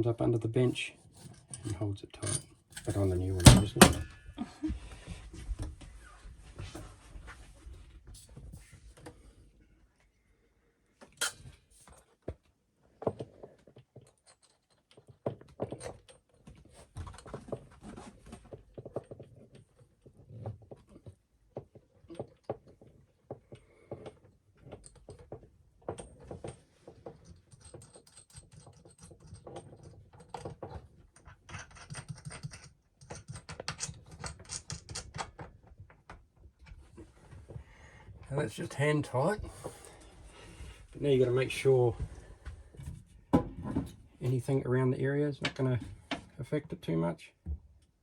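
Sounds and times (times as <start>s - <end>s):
clicks scrapes and rattles of fitting: 26.0s - 36.8s.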